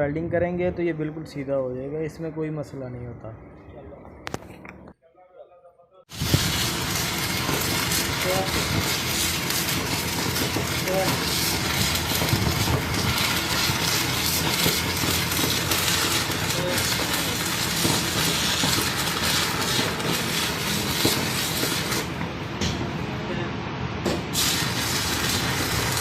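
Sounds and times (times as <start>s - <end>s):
arc welding crackling sizzle: 6.1s - 22.8s, 24.0s - 26.0s.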